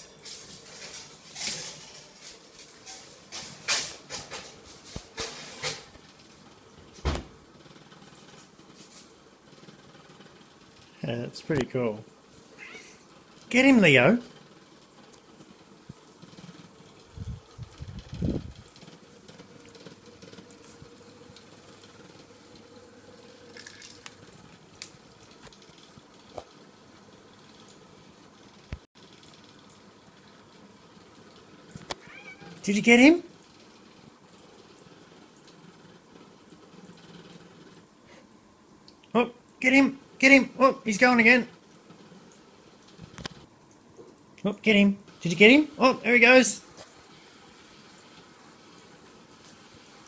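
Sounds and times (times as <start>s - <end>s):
thump: 7.0s - 7.3s.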